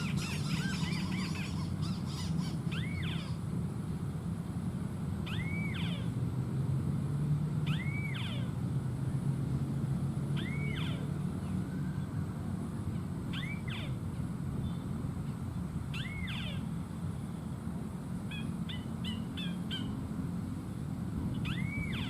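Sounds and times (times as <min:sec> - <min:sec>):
bird calling: 0:00.0 - 0:03.5, 0:05.2 - 0:06.2, 0:07.6 - 0:09.2, 0:10.3 - 0:12.2, 0:12.8 - 0:16.8, 0:18.2 - 0:20.1, 0:21.3 - 0:22.0.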